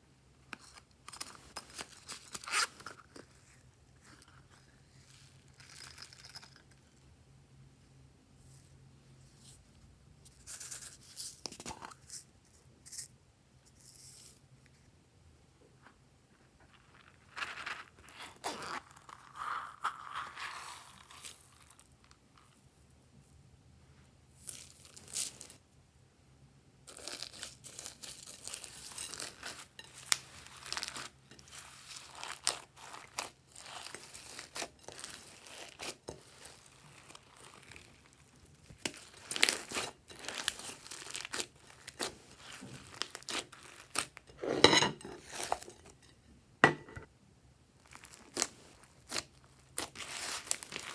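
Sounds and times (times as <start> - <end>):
slime crackling and popping: 26.9 - 44.2, 47.8 - 50.9.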